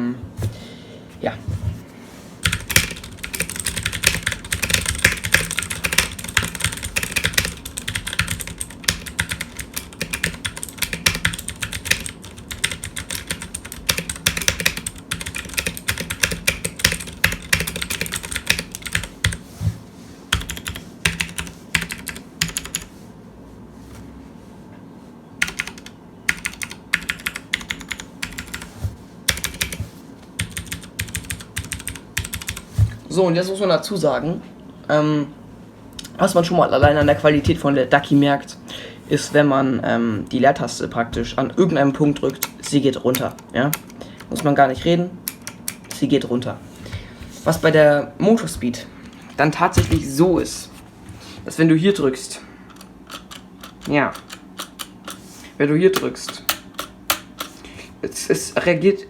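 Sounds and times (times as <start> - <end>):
fast clicky keyboard typing: 2.4 - 19.4, 20.3 - 22.9, 25.4 - 28.7, 29.3 - 29.8, 30.4 - 32.7, 52.7 - 55.2.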